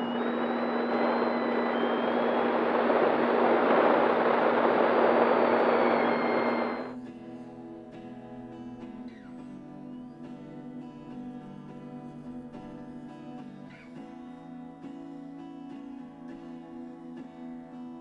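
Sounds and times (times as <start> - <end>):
model plane motor and propeller: 0.0 - 6.9
acoustic guitar music: 6.9 - 18.0.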